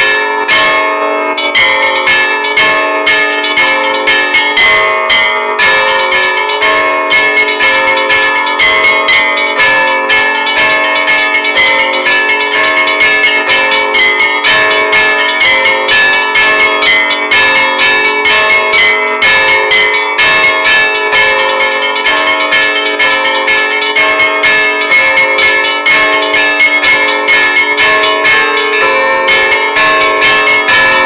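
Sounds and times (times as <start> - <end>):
church bells pealing rapidly: 0.0 - 31.0.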